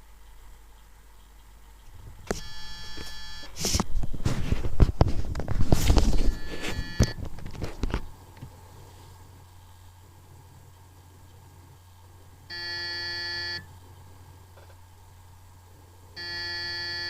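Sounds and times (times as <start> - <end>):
laptop high-pitched electronic whine: 0.0 - 8.0, 9.3 - 17.0
faint low hum: 0.0 - 17.0
rustling handling noise: 1.9 - 10.0.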